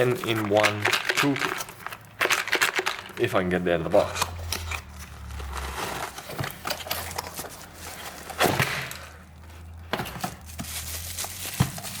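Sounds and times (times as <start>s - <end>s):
box scraping and rustling: 4.0s - 12.0s.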